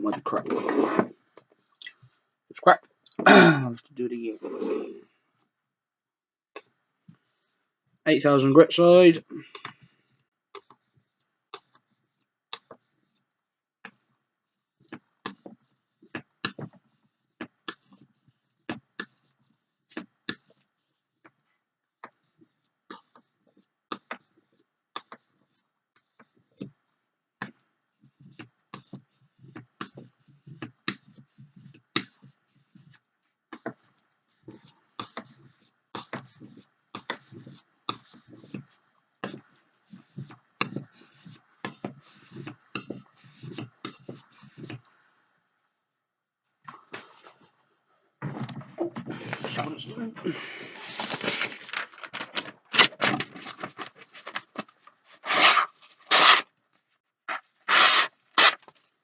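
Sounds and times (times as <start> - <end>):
knife scraping on whetstone: 0.4 - 1.1, 4.4 - 5.0, 55.2 - 56.4, 57.3 - 58.5.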